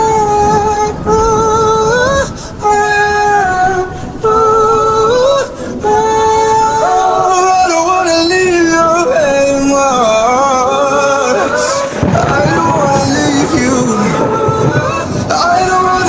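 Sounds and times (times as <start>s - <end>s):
rain hiss: 0.0s - 16.0s
wordless a cappella singing: 0.0s - 16.0s
singer breathing: 2.2s - 2.6s, 5.4s - 5.9s, 11.4s - 12.2s, 14.6s - 15.3s.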